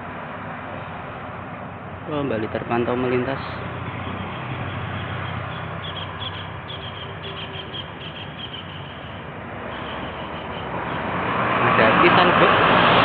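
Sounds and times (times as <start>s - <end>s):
road traffic rumble: 0.0s - 13.0s
small bird chirping: 4.0s - 10.7s.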